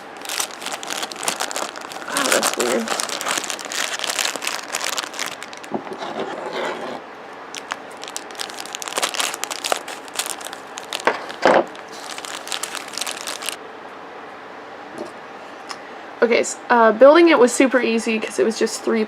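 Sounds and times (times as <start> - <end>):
plastic packaging crinkling: 0.0 - 13.6.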